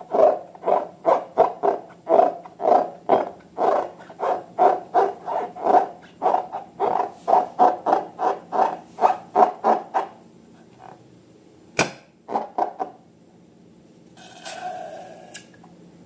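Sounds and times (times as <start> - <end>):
sharp snap: 11.8 - 12.1.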